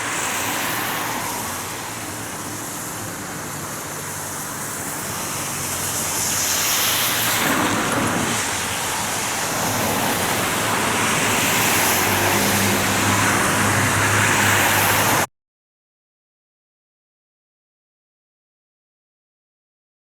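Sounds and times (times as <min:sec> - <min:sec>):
passing vehicle rushing: 0:00.0 - 0:15.3.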